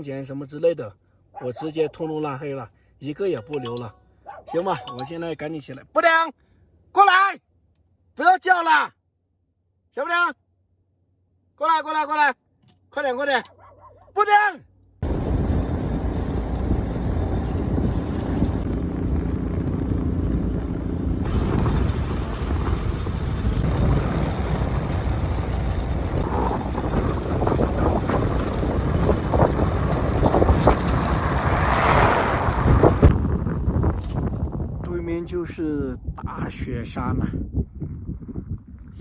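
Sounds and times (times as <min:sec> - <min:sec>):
vehicle engine and road rumble: 0:00.0 - 0:08.2, 0:12.4 - 0:39.0
wind on microphone: 0:15.0 - 0:39.0.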